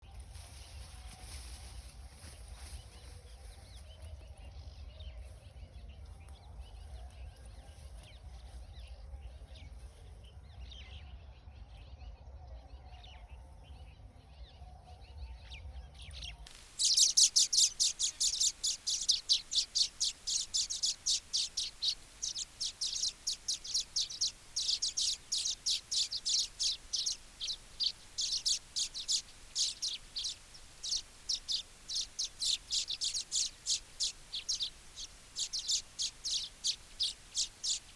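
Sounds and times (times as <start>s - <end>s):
birds chirping: 16.5s - 37.9s
low background rumble: 16.6s - 37.9s.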